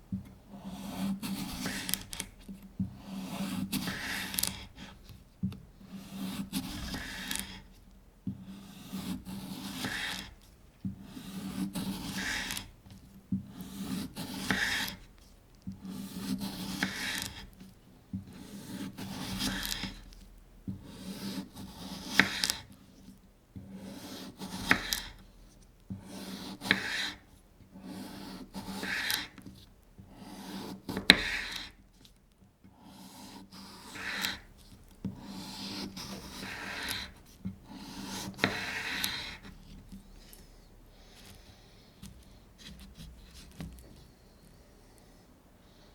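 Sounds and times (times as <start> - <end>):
knife slicing cucumber: 0.6 - 2.4, 3.0 - 5.0, 8.4 - 10.4, 11.0 - 12.7, 13.5 - 15.0, 15.8 - 17.6, 18.3 - 20.1, 20.8 - 22.6, 23.7 - 25.2, 26.0 - 27.2, 27.8 - 29.5, 30.3 - 31.8, 32.9 - 34.5, 35.1 - 39.6.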